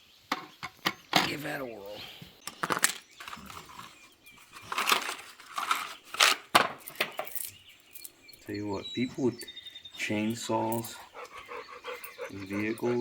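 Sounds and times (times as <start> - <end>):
rustling and scraping handling: 2.4 - 8.4.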